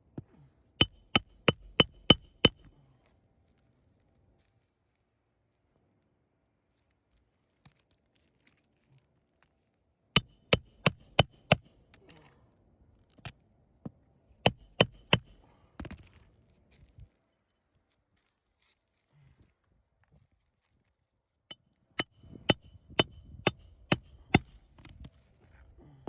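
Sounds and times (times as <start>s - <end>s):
hammer striking steel: 0.8s - 2.7s, 10.2s - 12.0s, 14.5s - 15.6s, 22.0s - 25.1s.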